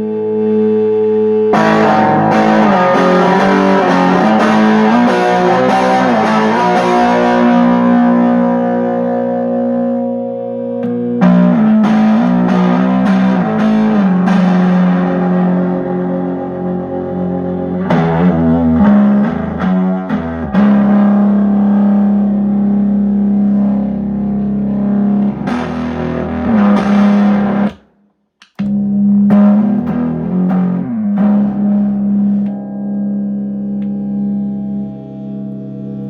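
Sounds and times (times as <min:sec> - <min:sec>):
electric guitar playing: 0:00.0 - 0:36.0.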